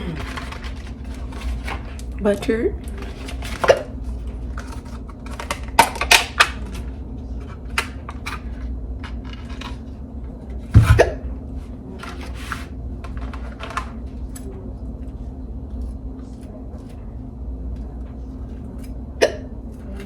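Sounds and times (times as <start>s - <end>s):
low steady hum: 0.0s - 20.0s
person hiccuping: 19.2s - 19.5s.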